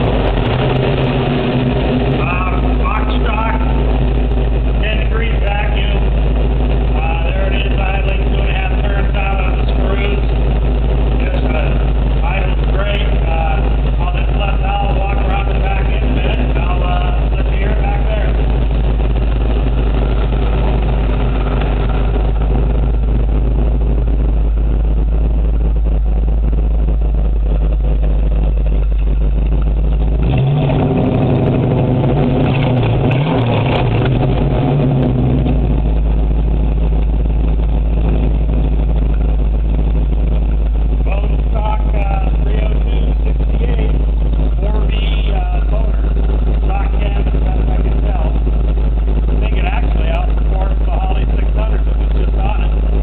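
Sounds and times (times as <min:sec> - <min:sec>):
car engine idling and revving: 0:00.0 - 0:53.0
voices talking: 0:02.2 - 0:03.9, 0:11.0 - 0:19.1, 0:41.0 - 0:48.6, 0:49.3 - 0:52.8.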